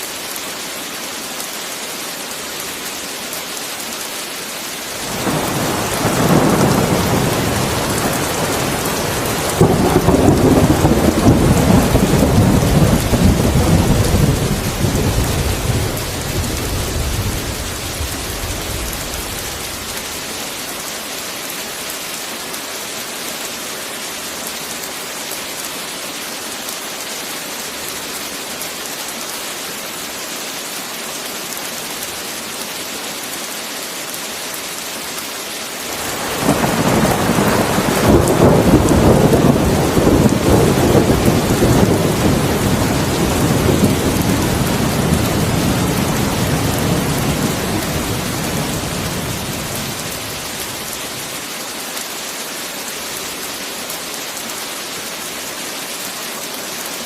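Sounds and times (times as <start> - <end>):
heavy rain falling: 0.0 - 57.0
thunder rumble: 5.0 - 20.2, 36.0 - 50.9.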